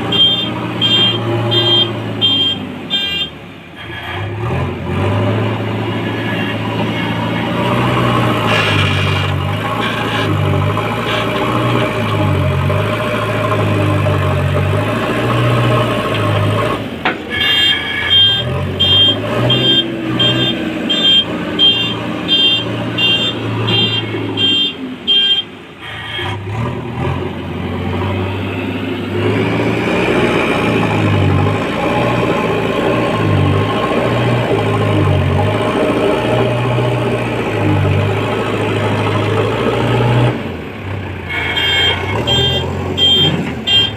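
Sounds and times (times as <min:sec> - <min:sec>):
diesel engine running: 0:00.0 - 0:43.9
reversing alarm beeping: 0:17.4 - 0:25.4.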